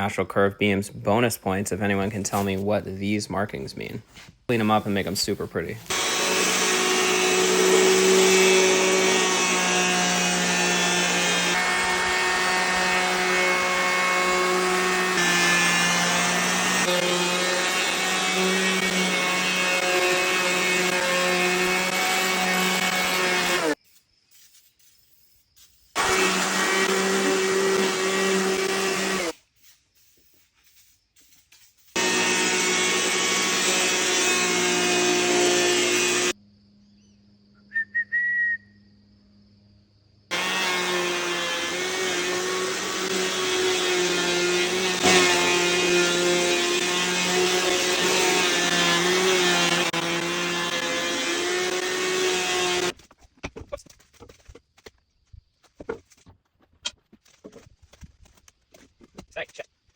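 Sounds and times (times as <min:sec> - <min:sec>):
power tool humming on wood: 0:05.9 - 0:23.8, 0:26.0 - 0:29.3, 0:32.0 - 0:36.4, 0:40.3 - 0:52.9.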